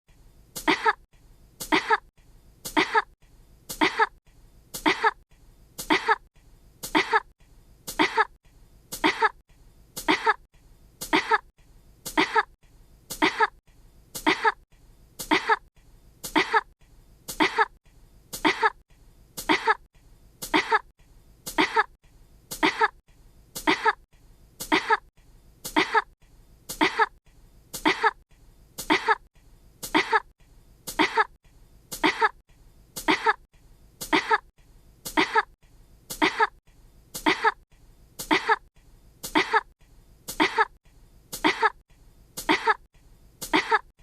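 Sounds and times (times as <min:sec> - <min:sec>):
person coughing: 0:00.6 - 0:01.0, 0:01.6 - 0:02.1, 0:02.7 - 0:04.2, 0:04.8 - 0:05.2, 0:05.8 - 0:07.3, 0:07.9 - 0:09.4, 0:10.0 - 0:10.4, 0:11.0 - 0:11.5, 0:12.1 - 0:13.6, 0:14.2 - 0:14.6, 0:15.2 - 0:16.7, 0:17.3 - 0:17.8, 0:18.4 - 0:18.8, 0:19.4 - 0:20.9, 0:21.5 - 0:23.0, 0:23.6 - 0:24.0, 0:24.6 - 0:25.1, 0:25.7 - 0:26.1, 0:26.7 - 0:27.2, 0:27.8 - 0:28.2, 0:28.8 - 0:30.3, 0:30.9 - 0:32.4, 0:33.0 - 0:34.5, 0:35.1 - 0:36.6, 0:37.2 - 0:37.6, 0:38.2 - 0:39.7, 0:40.3 - 0:40.8, 0:41.4 - 0:41.8, 0:42.4 - 0:43.9.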